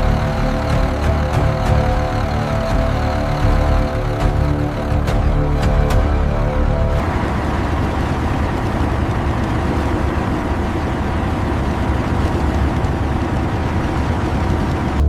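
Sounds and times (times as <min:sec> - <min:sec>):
music: 0:00.0 - 0:07.1
vehicle engine rumbling: 0:00.0 - 0:15.0.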